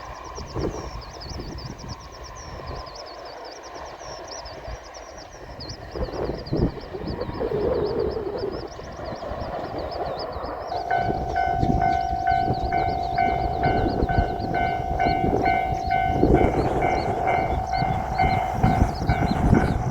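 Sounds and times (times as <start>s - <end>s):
level-crossing warning bell: 9.0s - 19.9s
high chirping: 9.8s - 19.9s.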